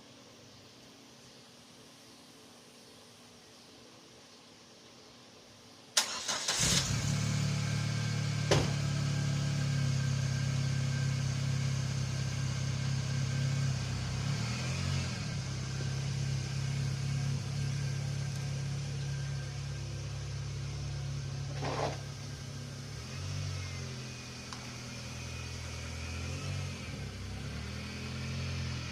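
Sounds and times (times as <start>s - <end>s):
car engine starting and idling: 6.0s - 28.9s
sharp knock: 8.5s - 8.8s.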